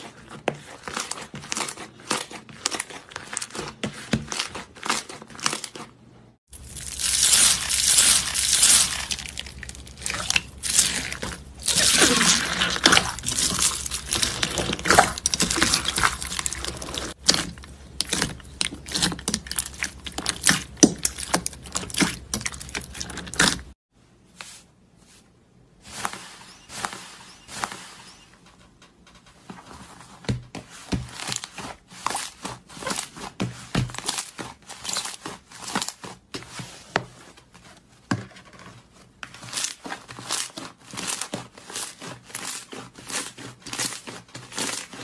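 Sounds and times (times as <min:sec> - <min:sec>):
slime squishing and crackling: 0:00.0 - 0:23.8, 0:31.0 - 0:36.3, 0:39.3 - 0:45.0.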